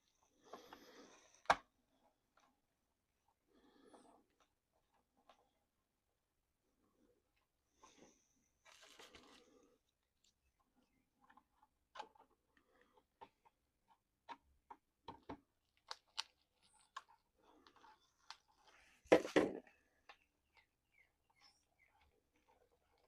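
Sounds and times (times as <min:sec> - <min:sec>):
plastic parts clicking and tapping: 0:13.0 - 0:20.7.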